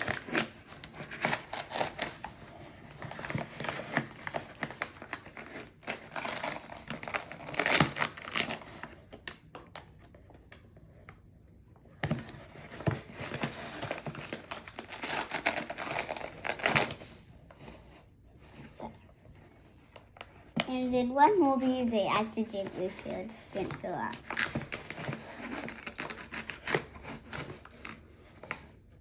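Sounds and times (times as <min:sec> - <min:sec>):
packaging crinkling: 0:00.0 - 0:10.2, 0:12.1 - 0:17.2, 0:22.6 - 0:29.0.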